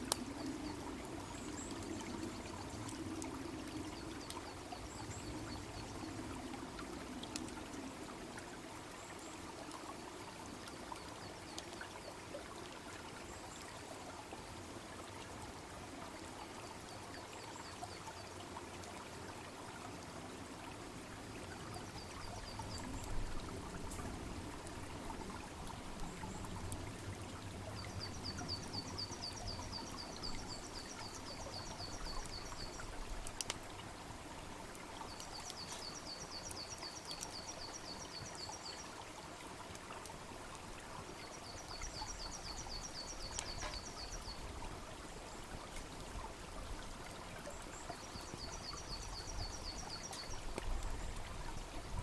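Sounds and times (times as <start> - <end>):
stream babbling: 0.0 - 52.0
wood fire crackling and popping: 33.3 - 33.6.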